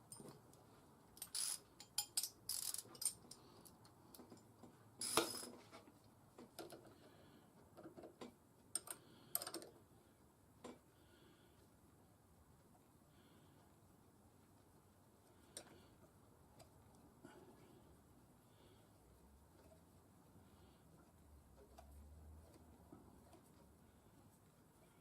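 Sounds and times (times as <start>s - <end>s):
metal tools clicking and clinking: 1.2s - 3.4s.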